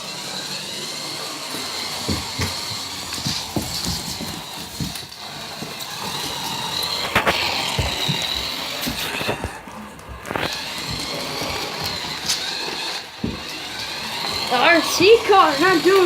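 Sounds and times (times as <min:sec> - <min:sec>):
toy car electric motor whining: 0:00.0 - 0:16.0
knocks and thumps: 0:01.8 - 0:12.5, 0:13.2 - 0:13.6.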